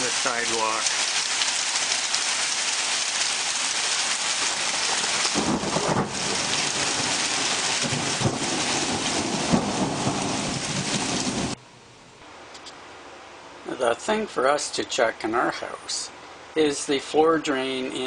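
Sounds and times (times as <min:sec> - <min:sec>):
heavy rain pouring: 0:00.0 - 0:11.6.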